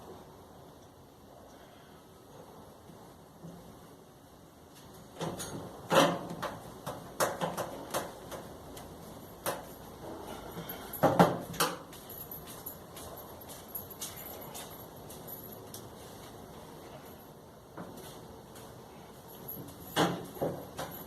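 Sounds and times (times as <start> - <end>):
knocks clicks and scrapes of parts: 4.7 - 16.4, 17.8 - 21.0.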